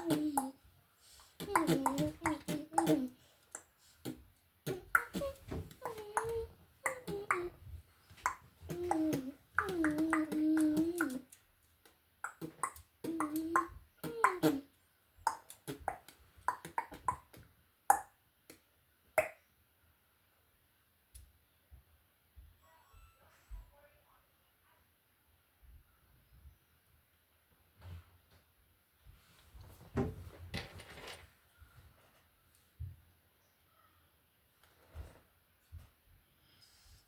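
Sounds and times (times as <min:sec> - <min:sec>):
child humming: 0:01.4 - 0:03.2, 0:04.7 - 0:07.6, 0:08.6 - 0:11.3, 0:12.4 - 0:14.7.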